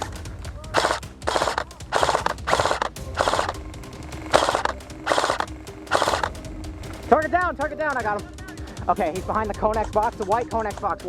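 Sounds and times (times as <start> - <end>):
airsoft gun full-auto bursts: 0.7 - 3.6, 4.3 - 6.4.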